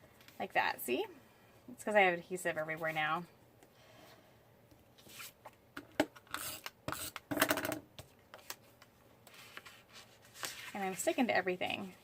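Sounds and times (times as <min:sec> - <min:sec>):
paper rustling and crinkling: 0:09.3 - 0:12.0.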